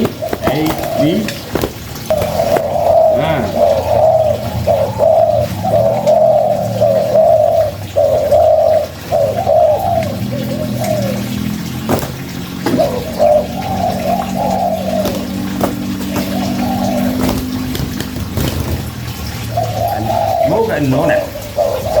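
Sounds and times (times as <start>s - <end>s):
dove cooing: 0.0s - 22.0s
short knocks: 11.8s - 13.2s, 15.0s - 19.2s.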